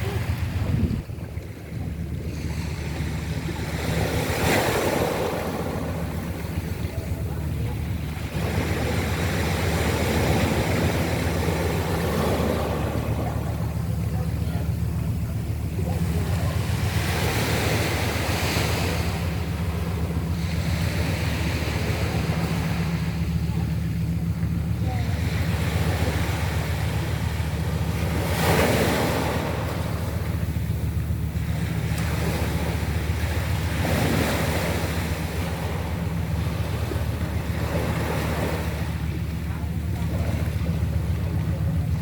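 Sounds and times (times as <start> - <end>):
sea waves breaking: 0.0 - 42.0
wind rumble on microphone: 0.0 - 42.0
waves washing onto pebble beach: 24.6 - 39.0.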